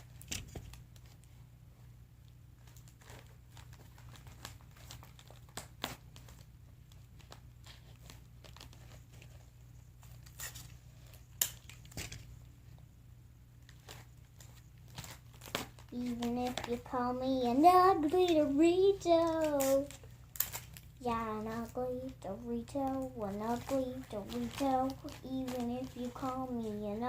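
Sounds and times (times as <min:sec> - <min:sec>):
tape and cardboard crinkling: 0:02.6 - 0:12.4, 0:13.6 - 0:27.0
tape tearing: 0:02.7 - 0:06.4, 0:10.0 - 0:12.2, 0:13.7 - 0:21.7, 0:22.8 - 0:26.9
steady low hum: 0:06.2 - 0:27.0
sharp crackles: 0:14.9 - 0:27.0.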